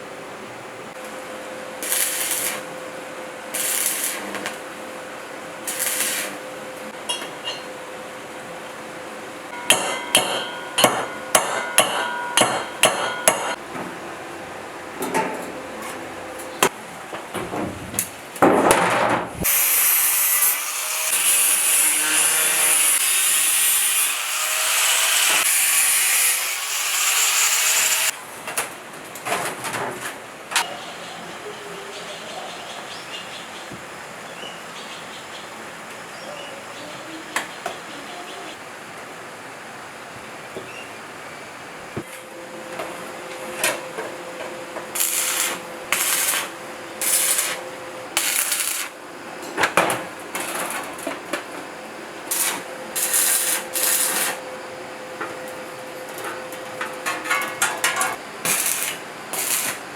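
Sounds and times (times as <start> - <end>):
steady high hissing: 1.8 - 4.8, 44.9 - 49.0
hammer striking metal: 9.5 - 13.6
metal scraping: 44.9 - 47.6, 52.3 - 54.4.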